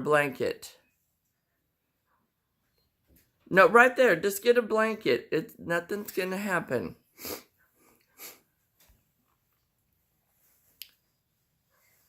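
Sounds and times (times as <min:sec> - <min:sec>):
soft rustles: 0:08.5 - 0:12.0.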